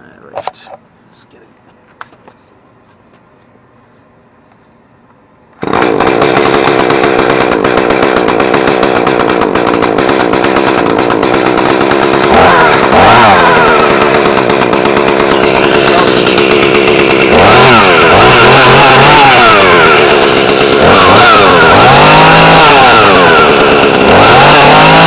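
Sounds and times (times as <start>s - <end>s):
chainsaw engine idling and revving: 5.6s - 25.0s.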